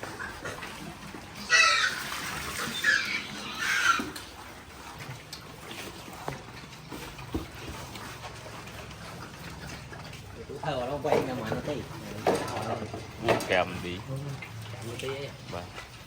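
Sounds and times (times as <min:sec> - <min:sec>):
piglets squealing: 0:01.3 - 0:04.4.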